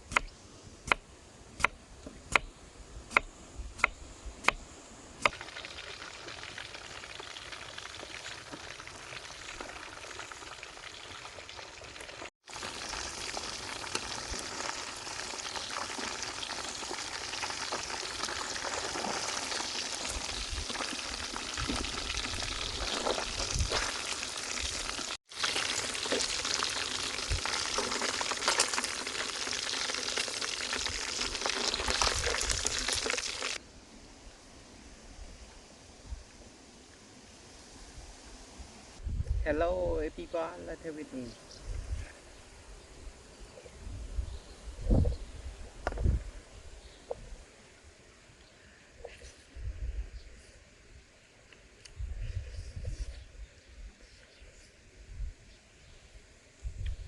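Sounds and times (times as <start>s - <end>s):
food sizzling in hot oil: 5.3s - 33.6s.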